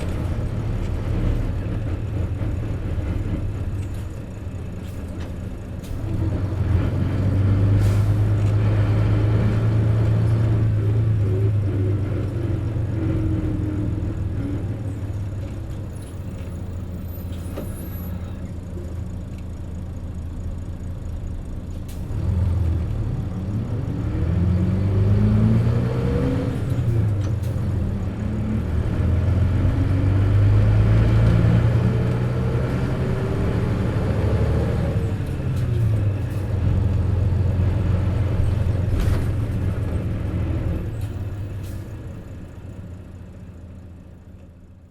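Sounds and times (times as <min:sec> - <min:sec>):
bus engine drone: 0:00.0 - 0:44.9.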